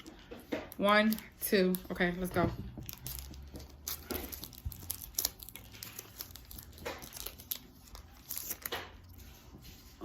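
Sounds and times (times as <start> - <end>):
foil wrapper tearing and crinkling: 2.8 - 9.2.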